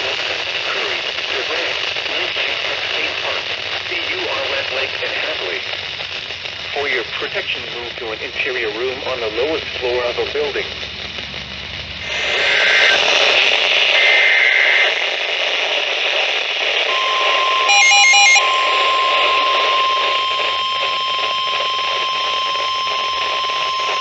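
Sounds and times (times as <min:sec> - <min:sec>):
radio static hiss: 0:00.0 - 0:24.0
two-tone data bursts: 0:12.0 - 0:24.0
beeping tones: 0:16.9 - 0:24.0
steady warning alarm tone: 0:16.9 - 0:24.0.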